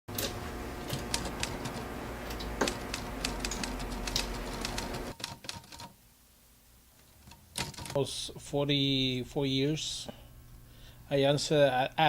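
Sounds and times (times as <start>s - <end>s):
steady low hum: 0.1s - 5.2s
typewriter keys clacking: 0.8s - 5.9s, 7.3s - 8.0s.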